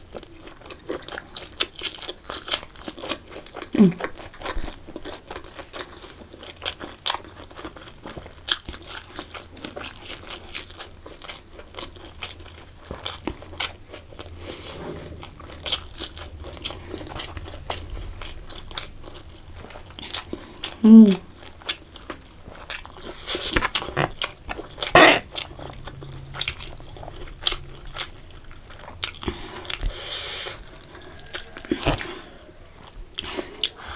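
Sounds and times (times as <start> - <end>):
person chewing crisp food: 0.0 - 33.9.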